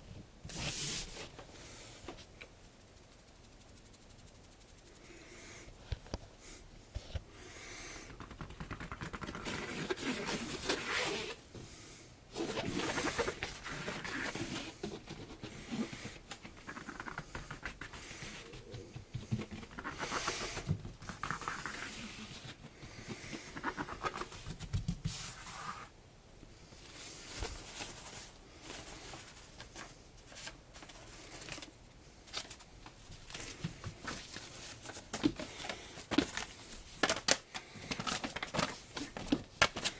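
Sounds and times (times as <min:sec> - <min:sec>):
cat rustling and scratching: 0:12.3 - 0:25.9, 0:26.7 - 0:39.9.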